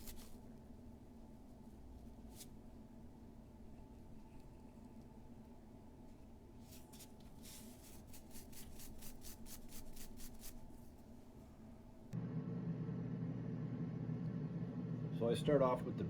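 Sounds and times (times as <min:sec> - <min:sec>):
quick rubbing strokes: 0:06.6 - 0:10.8
steady low hum: 0:09.8 - 0:16.0.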